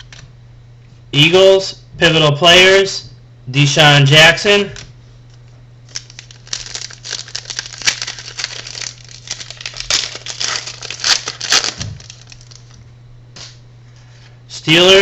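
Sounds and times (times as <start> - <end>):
low steady hum: 0.0 - 15.0
card packaging crinkling: 5.8 - 12.8.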